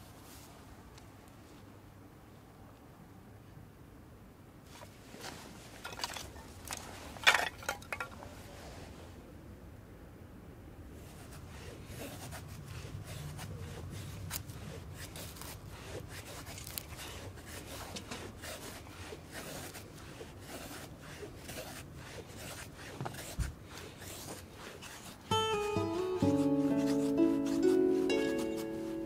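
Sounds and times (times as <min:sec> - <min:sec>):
firewood scraping and rustling: 0:04.7 - 0:08.9, 0:11.1 - 0:25.3.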